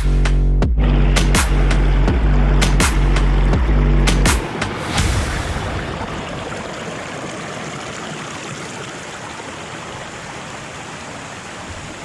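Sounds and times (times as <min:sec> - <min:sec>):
waterfall rushing: 0:04.2 - 0:12.0.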